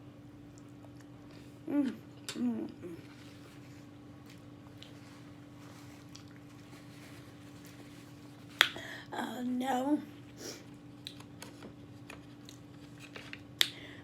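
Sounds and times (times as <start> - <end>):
steady low hum: 0.0 - 14.0
person chewing: 0.5 - 5.1, 5.9 - 6.7.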